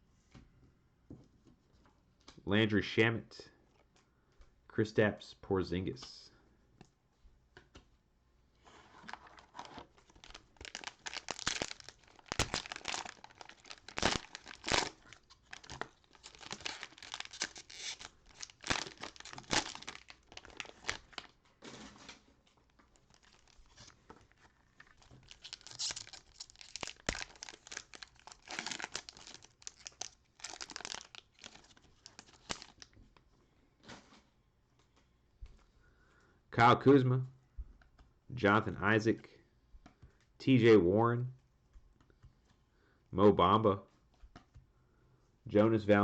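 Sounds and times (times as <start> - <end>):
cellophane wrapper tearing and crinkling: 9.1 - 33.0.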